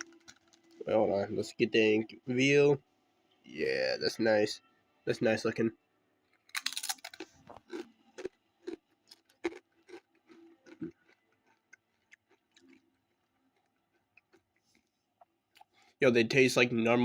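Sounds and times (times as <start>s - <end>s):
chips being chewed crunching: 0.0s - 0.8s, 6.5s - 14.9s.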